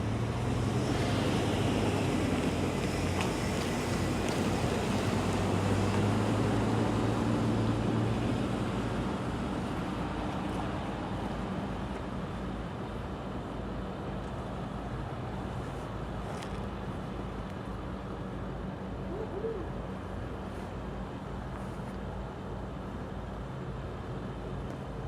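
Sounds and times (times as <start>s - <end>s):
engine drone: 0.0s - 15.6s.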